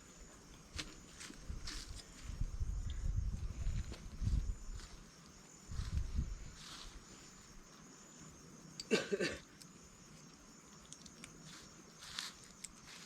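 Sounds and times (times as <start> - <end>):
high-pitched insect drone: 0.0 - 8.9.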